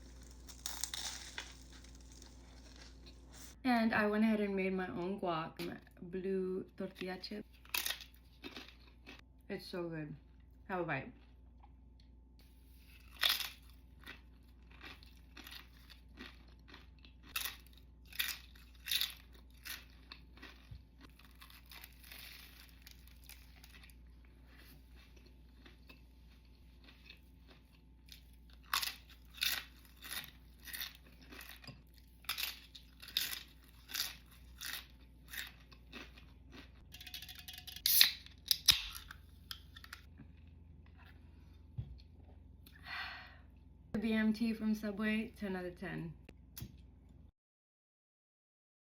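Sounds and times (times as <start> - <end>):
crunchy bites and chewing: 0.0 - 3.6, 7.5 - 9.2, 12.9 - 36.9.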